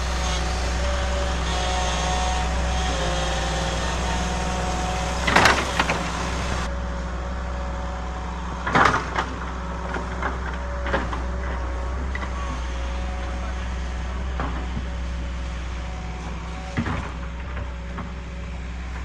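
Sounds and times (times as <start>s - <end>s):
loud clattering bursts: 0.0s - 6.7s
excavator engine running: 0.0s - 19.0s.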